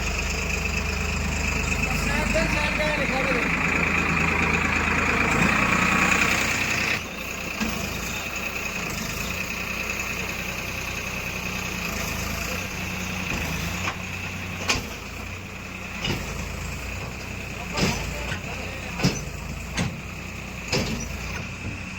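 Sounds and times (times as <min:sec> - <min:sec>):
heavy diesel engine running: 0:00.0 - 0:21.9.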